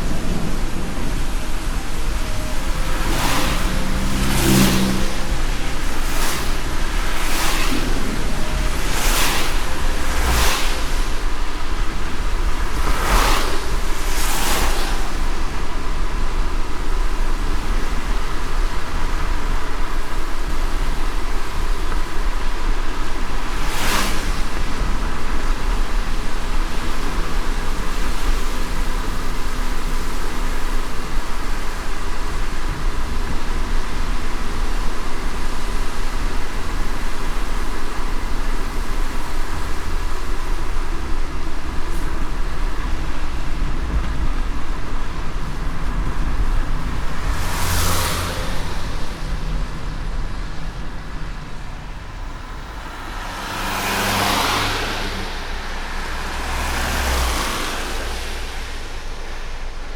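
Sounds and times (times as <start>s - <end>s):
passing whooshes: 0.0s - 18.1s, 41.1s - 59.9s
car on wet road: 0.0s - 59.9s.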